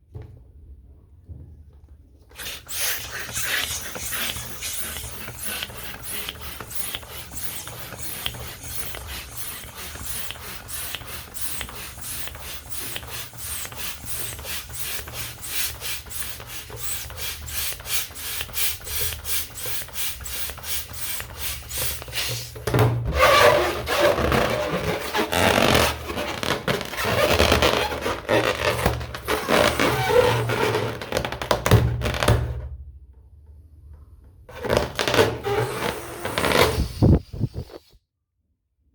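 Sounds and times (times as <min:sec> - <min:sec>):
air rushing into balloon: 0:02.3 - 0:22.6, 0:34.9 - 0:38.0
hand pump strokes: 0:02.4 - 0:22.6, 0:23.2 - 0:31.0, 0:34.6 - 0:37.9.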